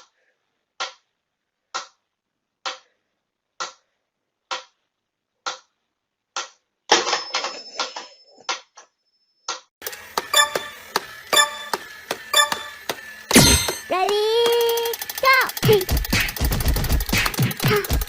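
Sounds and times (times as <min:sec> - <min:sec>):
sharp mechanical clicks: 0:09.8 - 0:18.0.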